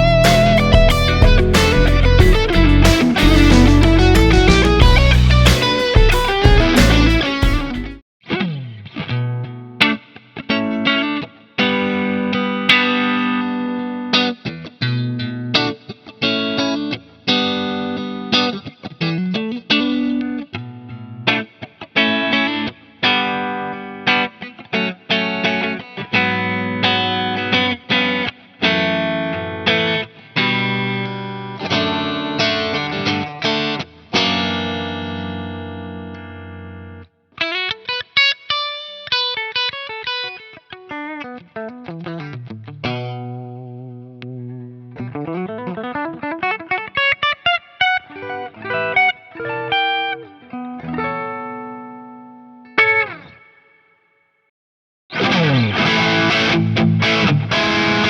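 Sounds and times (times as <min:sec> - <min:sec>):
electric guitar sliding single notes: 0:00.0 - 0:08.0
electric guitar chords: 0:00.0 - 0:53.8, 0:55.1 - 0:58.0.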